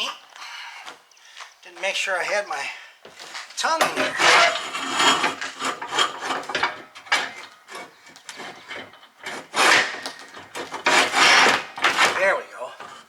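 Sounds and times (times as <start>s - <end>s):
metal axle scraping: 3.1s - 13.0s.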